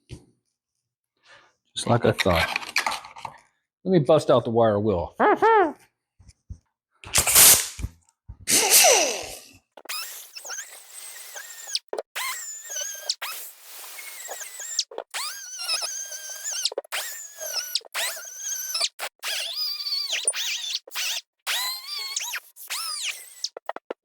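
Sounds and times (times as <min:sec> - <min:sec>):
wire wheel scrubbing metal: 0:09.8 - 0:24.0.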